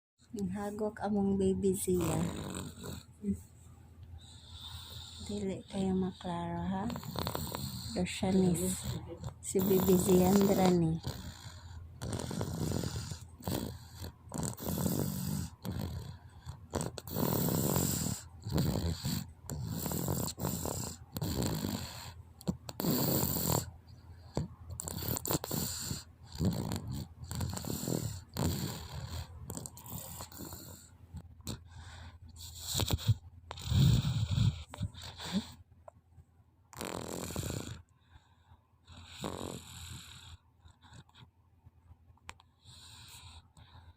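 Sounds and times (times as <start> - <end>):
child snoring: 1.8 - 3.4, 4.2 - 35.6, 36.7 - 37.9, 39.0 - 41.2, 42.6 - 43.6.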